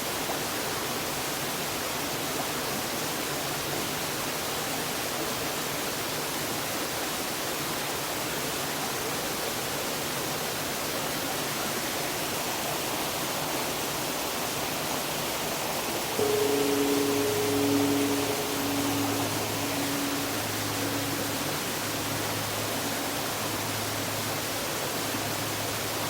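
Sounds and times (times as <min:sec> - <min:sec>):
waterfall rushing: 0:16.1 - 0:26.0.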